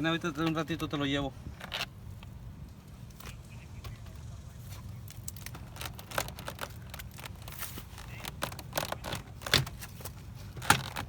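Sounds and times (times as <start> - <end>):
sharp clicks and light knocks: 5.1 - 11.0.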